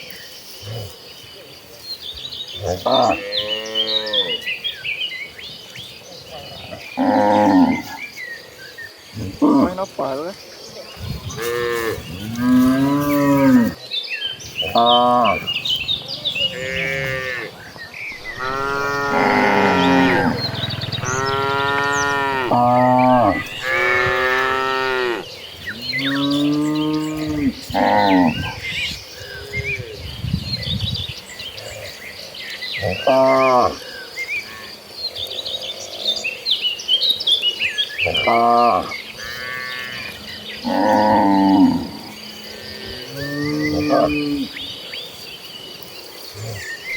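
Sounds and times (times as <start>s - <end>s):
cattle mooing: 11.3s - 13.8s, 14.6s - 17.6s, 18.2s - 25.2s.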